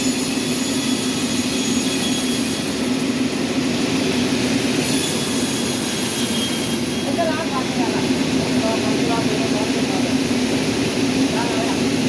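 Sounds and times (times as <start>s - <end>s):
sawmill machinery droning: 0.0s - 12.0s.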